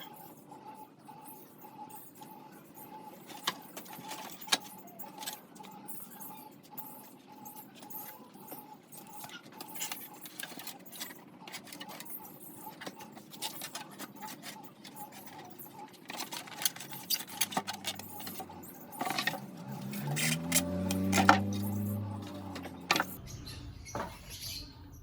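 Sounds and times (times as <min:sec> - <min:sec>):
small hard parts clicking and rattling: 0:00.0 - 0:23.2
low hum rising in pitch: 0:19.4 - 0:25.0.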